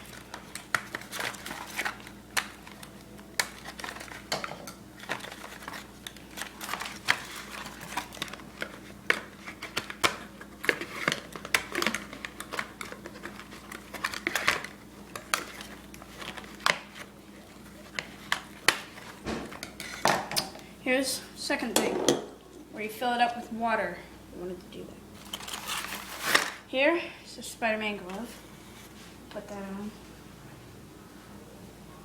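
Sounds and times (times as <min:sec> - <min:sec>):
plastic packaging crinkling: 0:00.0 - 0:20.0, 0:25.1 - 0:26.7.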